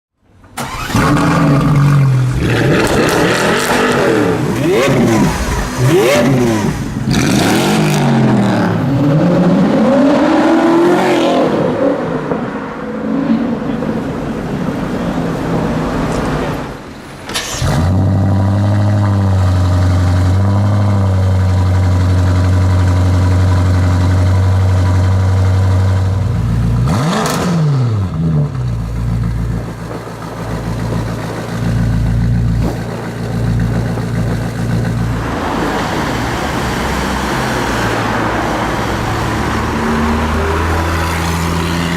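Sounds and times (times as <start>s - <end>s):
car engine revving: 0.6s - 16.7s, 17.3s - 41.9s
car engine idling: 18.4s - 26.8s, 28.6s - 37.4s.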